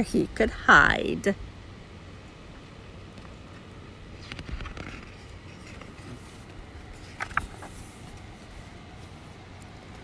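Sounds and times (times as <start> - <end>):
steady low hum: 0.0 - 10.0
short rustle: 4.1 - 10.0.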